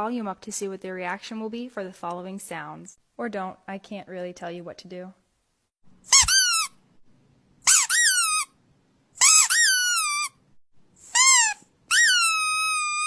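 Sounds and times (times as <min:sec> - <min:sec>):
rubber squeaky dog toy squeaking: 0:06.1 - 0:06.8, 0:07.6 - 0:08.6, 0:09.2 - 0:10.4, 0:11.0 - 0:13.0.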